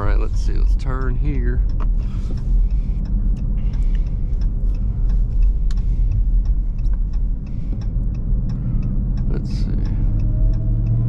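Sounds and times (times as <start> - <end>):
car engine rumble inside cabin: 0.0 - 11.0
sharp ticks: 0.0 - 11.0.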